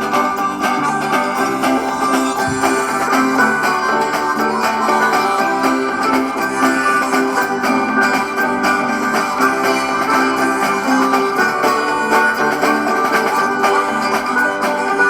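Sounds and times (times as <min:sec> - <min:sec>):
upbeat country guitar and banjo: 0:00.0 - 0:15.0.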